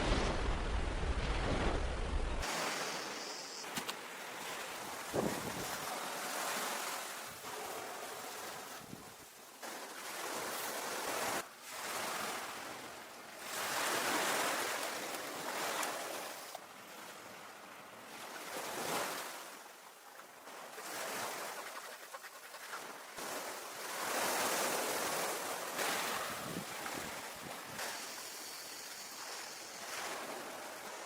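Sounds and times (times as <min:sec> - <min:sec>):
ocean surf washing onto beach: 0:00.0 - 0:12.8, 0:22.9 - 0:31.0.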